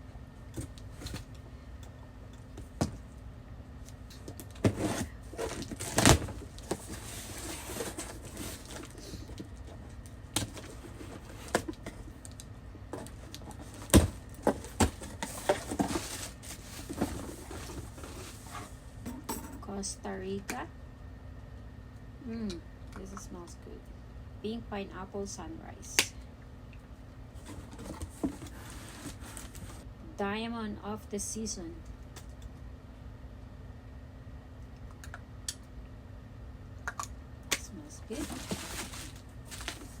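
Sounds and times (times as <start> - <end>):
packaging rustling: 4.5 - 12.4, 13.0 - 18.7, 38.1 - 40.0.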